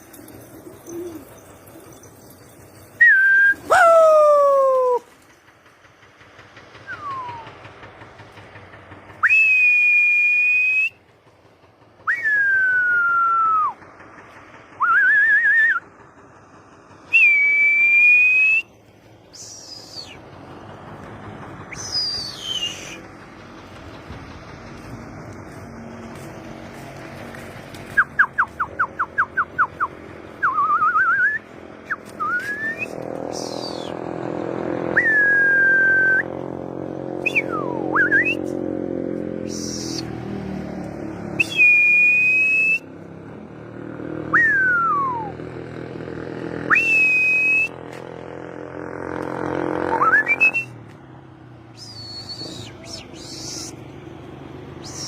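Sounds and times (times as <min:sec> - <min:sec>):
low engine-like drone: 0:00.0 - 0:55.0
person whistling: 0:03.0 - 0:04.9, 0:06.9 - 0:07.5, 0:09.2 - 0:11.0, 0:12.0 - 0:13.8, 0:14.8 - 0:15.8, 0:17.1 - 0:18.7, 0:21.7 - 0:23.0, 0:28.0 - 0:33.9, 0:35.0 - 0:36.3, 0:37.3 - 0:38.5, 0:41.4 - 0:42.9, 0:44.3 - 0:45.3, 0:46.7 - 0:47.8, 0:49.9 - 0:50.8, 0:51.8 - 0:53.8, 0:54.8 - 0:55.0.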